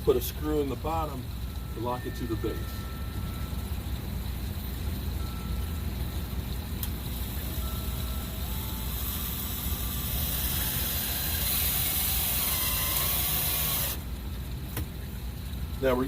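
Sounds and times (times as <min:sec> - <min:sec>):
cordless drill driving screw: 0:09.4 - 0:14.0.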